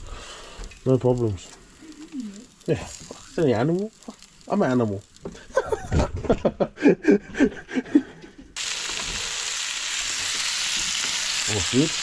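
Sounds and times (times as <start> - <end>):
food sizzling on barbecue plate: 0.0 - 6.0, 8.6 - 12.0.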